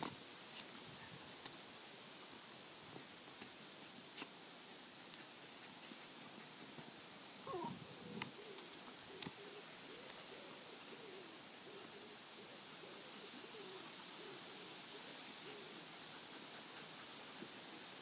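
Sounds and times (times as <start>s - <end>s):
steady hiss: 0.0s - 18.0s
low wavering animal call: 7.4s - 8.6s.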